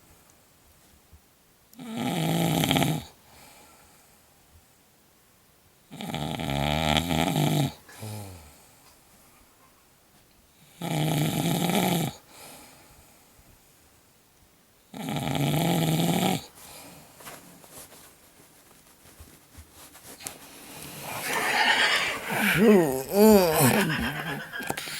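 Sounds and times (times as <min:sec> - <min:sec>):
snort: 0:05.9 - 0:08.6, 0:15.0 - 0:16.5, 0:20.8 - 0:23.9
woman snoring: 0:21.0 - 0:24.9.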